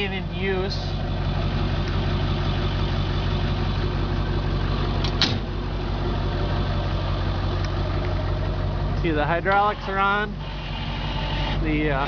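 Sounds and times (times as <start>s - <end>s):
truck engine idling: 0.0s - 12.0s.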